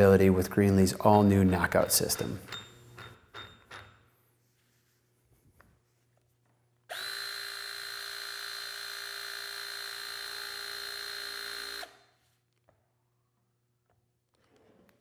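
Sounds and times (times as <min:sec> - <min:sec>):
hydraulic tool pump whine: 0:06.9 - 0:12.0.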